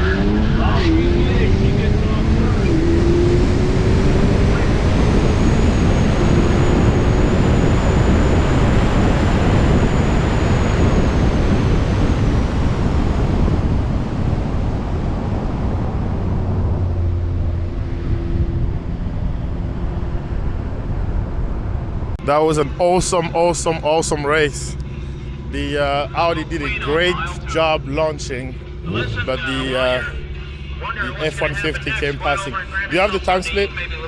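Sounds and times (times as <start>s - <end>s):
cars launching in a drag race: 0.0s - 17.8s, 22.2s - 34.0s.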